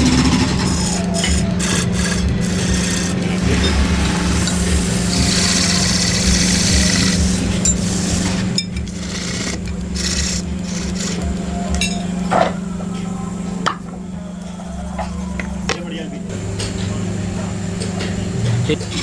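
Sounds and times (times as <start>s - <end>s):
rasping on wood: 0.0s - 12.8s
low machine hum: 0.0s - 19.0s.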